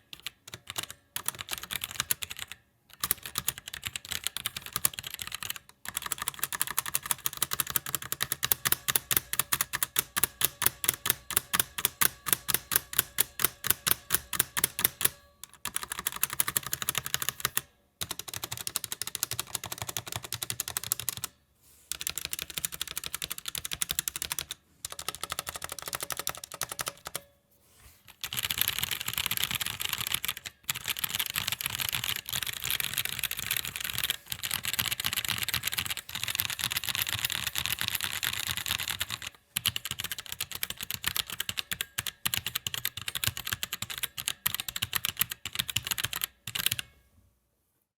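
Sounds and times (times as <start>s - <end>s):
mechanical keyboard typing: 0.0s - 27.3s, 28.1s - 46.9s.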